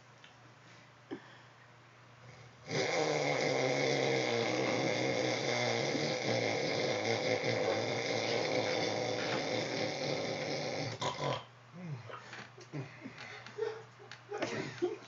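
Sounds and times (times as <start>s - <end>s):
man snoring loudly: 2.3s - 11.4s.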